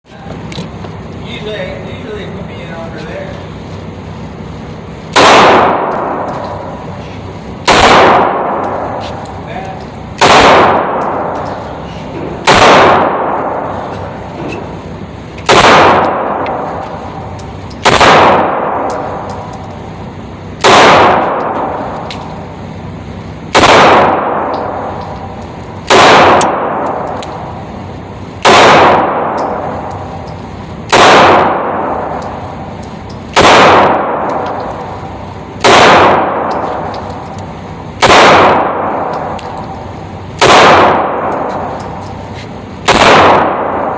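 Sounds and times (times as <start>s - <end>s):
pistol shots: 5.1s - 6.6s, 7.6s - 9.0s, 10.2s - 11.4s, 12.4s - 13.8s, 15.4s - 16.8s, 17.8s - 19.5s, 20.6s - 22.3s, 23.5s - 25.1s, 25.8s - 27.4s, 28.4s - 30.2s, 30.9s - 32.4s, 33.3s - 34.8s, 35.6s - 37.2s, 38.0s - 39.7s, 40.4s - 42.0s, 42.8s - 43.9s.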